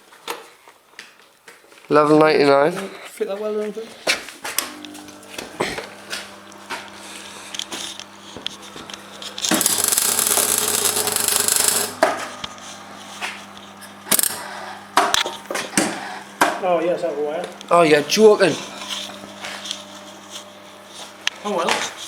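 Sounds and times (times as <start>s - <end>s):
welder humming: 4.4s - 22.0s
crackling weld bursts: 9.3s - 12.4s, 14.1s - 14.5s
spluttering weld bursts: 9.4s - 12.1s, 14.1s - 14.5s.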